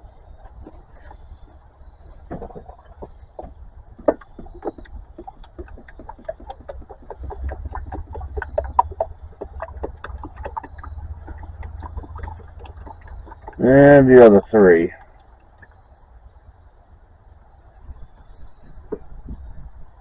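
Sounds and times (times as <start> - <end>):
motor oil glugging from bottle: 0.0 - 15.9
steady low rumble: 0.0 - 20.0.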